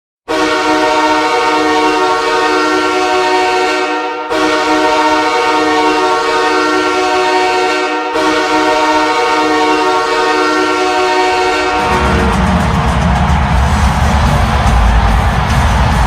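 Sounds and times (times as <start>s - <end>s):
arena goal horn blowing: 0.3s - 13.0s
goal song music: 8.2s - 16.0s.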